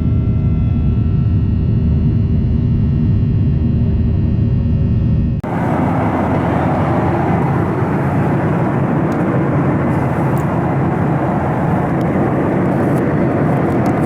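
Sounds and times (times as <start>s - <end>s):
jet engine cabin rush: 5.4s - 14.0s.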